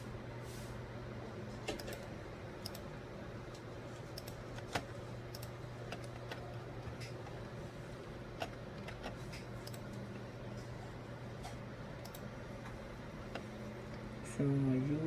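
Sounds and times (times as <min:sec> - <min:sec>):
steady low hum: 0:00.0 - 0:15.0
computer keys clicking: 0:01.7 - 0:02.9, 0:03.5 - 0:07.4, 0:08.4 - 0:10.0, 0:12.0 - 0:12.7.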